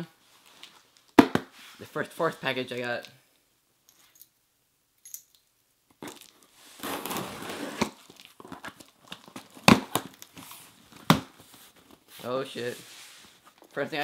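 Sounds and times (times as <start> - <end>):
packaging crinkling and rustling: 6.0 - 12.1.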